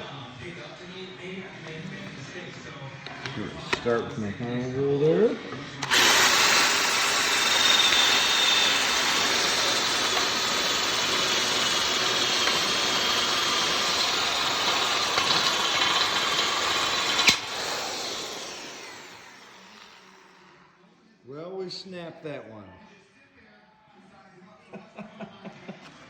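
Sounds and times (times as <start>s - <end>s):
drill bit snapping crack: 5.8s - 20.1s
power drill boring through metal: 5.8s - 20.6s.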